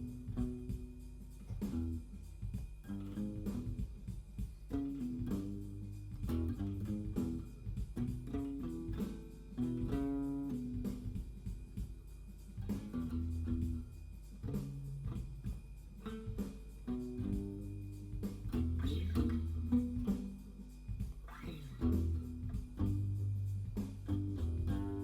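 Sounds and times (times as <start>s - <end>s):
blues guitar playing: 2.9s - 3.7s, 4.7s - 11.0s, 16.0s - 20.6s, 21.2s - 25.0s.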